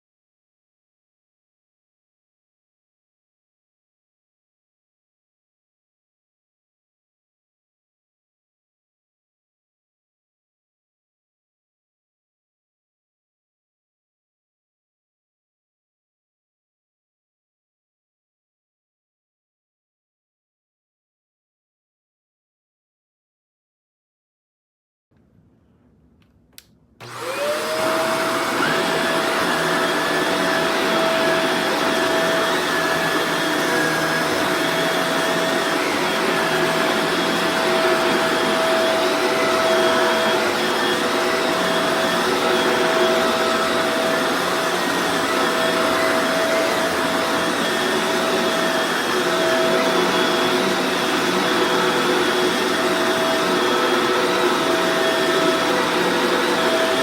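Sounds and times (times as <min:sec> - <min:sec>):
vacuum cleaner running: 0:27.0 - 0:57.0.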